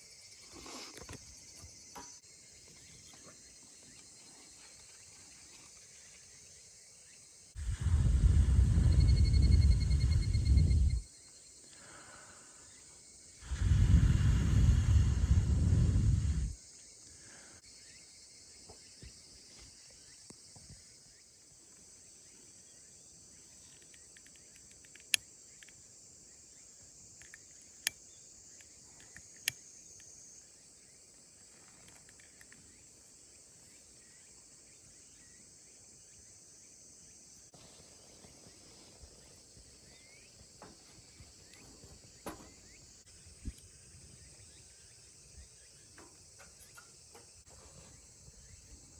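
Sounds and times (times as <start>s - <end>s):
insects chirring: 0.0s - 48.9s
sharp clicks: 23.8s - 25.8s.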